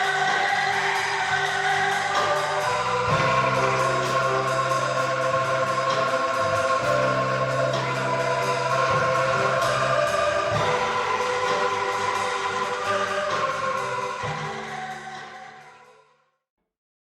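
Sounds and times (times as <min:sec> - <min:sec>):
shaken bamboo tube chords: 0:00.0 - 0:15.6.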